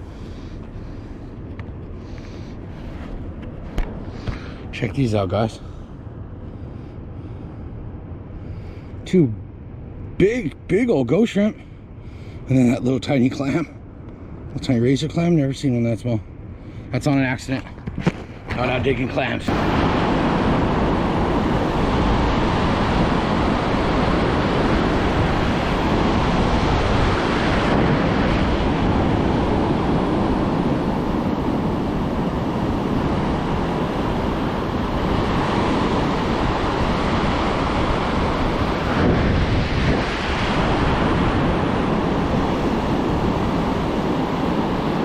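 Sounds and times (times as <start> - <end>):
wind buffeting microphone: 17.2 - 45.0
surf washing on beach: 18.4 - 45.0.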